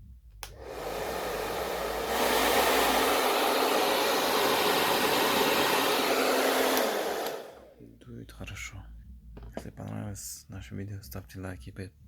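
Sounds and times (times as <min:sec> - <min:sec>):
hair dryer running: 0:00.4 - 0:07.8.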